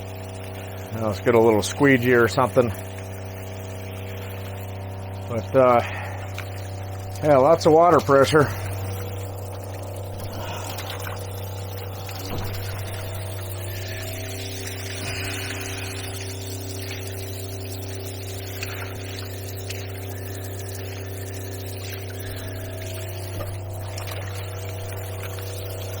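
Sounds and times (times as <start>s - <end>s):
steady low hum: 0.0s - 26.0s
shower spraying water: 5.8s - 26.0s.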